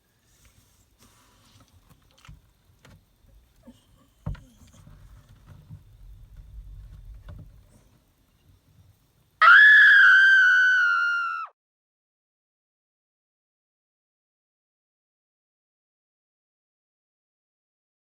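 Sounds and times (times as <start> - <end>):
faint rustling and shuffling: 0.0 - 9.4.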